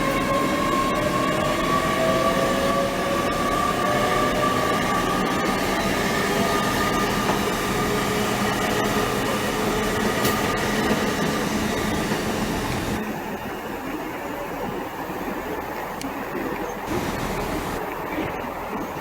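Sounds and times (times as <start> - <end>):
train running noise: 0.0 - 19.0
high even whine: 16.9 - 17.8.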